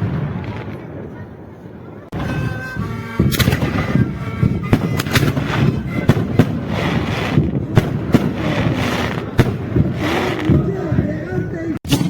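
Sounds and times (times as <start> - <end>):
crackling rumble: 0.0 - 11.8
fireworks banging: 0.0 - 12.0.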